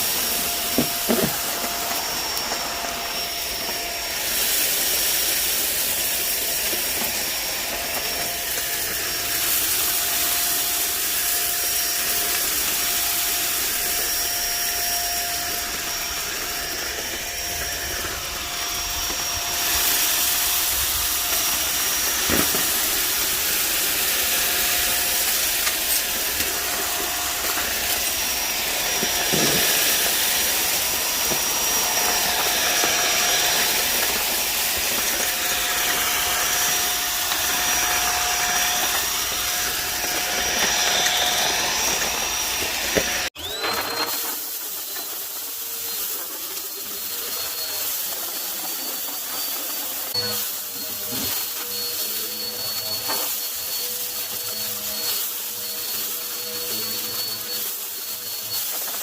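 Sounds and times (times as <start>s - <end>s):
quieter vacuum cleaner: 0.0s - 59.0s
vacuum cleaner motor whining: 0.0s - 59.0s.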